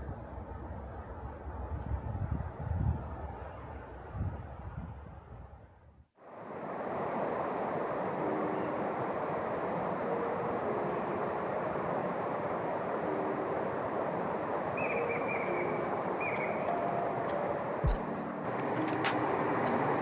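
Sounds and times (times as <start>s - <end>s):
steady rushing noise: 6.3s - 20.0s.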